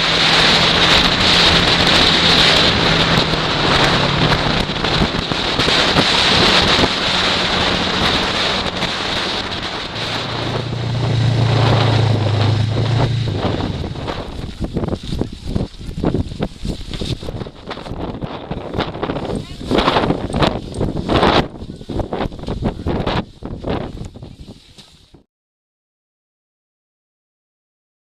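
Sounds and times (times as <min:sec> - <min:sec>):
snowmobile engine running: 0:00.0 - 0:24.5
wind noise on microphone: 0:00.0 - 0:25.3.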